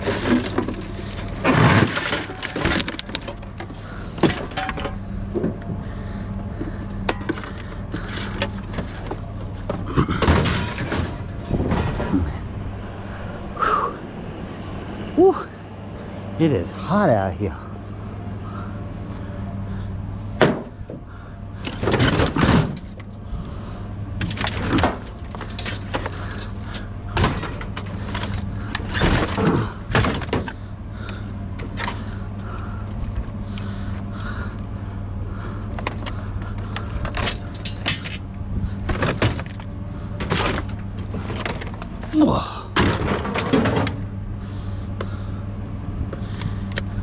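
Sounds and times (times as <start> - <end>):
metal parts clattering: 0.0 - 5.0, 10.0 - 12.0, 24.2 - 30.6, 37.0 - 38.2
steady low hum: 0.0 - 47.0.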